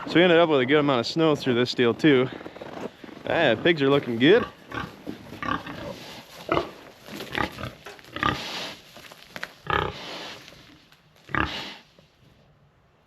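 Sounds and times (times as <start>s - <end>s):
pigs grunting: 3.2s - 8.8s, 9.6s - 11.9s.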